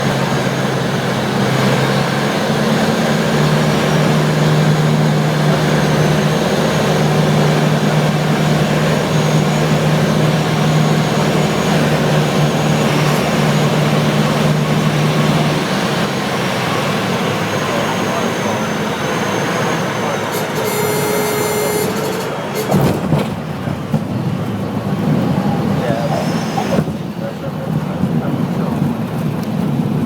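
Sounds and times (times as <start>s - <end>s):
propeller plane engine hum: 0.0s - 30.0s
faint high whine: 17.8s - 22.7s.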